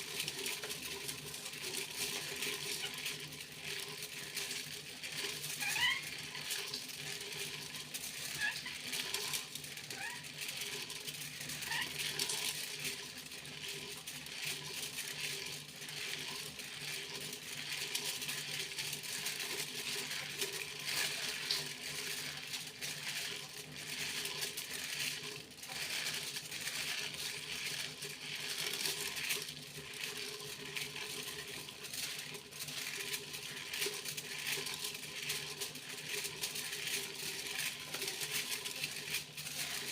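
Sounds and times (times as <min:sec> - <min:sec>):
foil crinkling: 0:00.0 - 0:39.9
short rising squeaks: 0:05.6 - 0:06.1.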